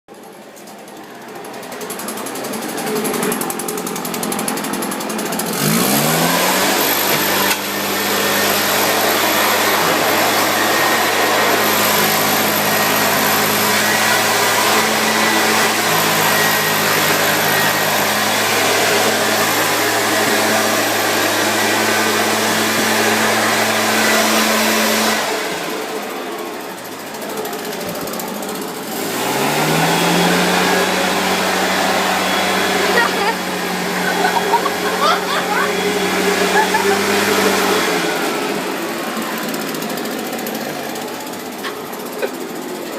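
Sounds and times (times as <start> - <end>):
leaf blower engine drone: 0.1 - 42.9.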